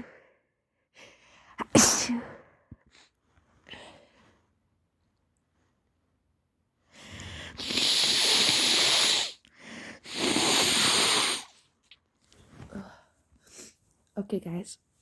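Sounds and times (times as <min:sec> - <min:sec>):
nose blowing into handkerchief: 0:07.5 - 0:09.4, 0:10.0 - 0:11.6.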